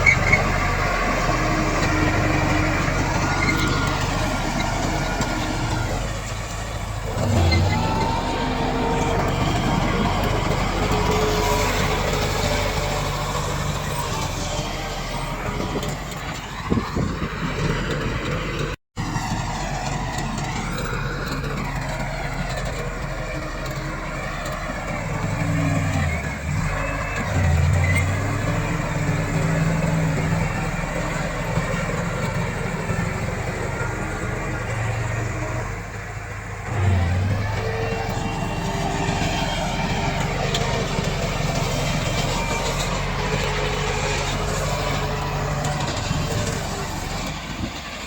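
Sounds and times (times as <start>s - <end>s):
bulldozer diesel engine running: 0.0s - 48.0s.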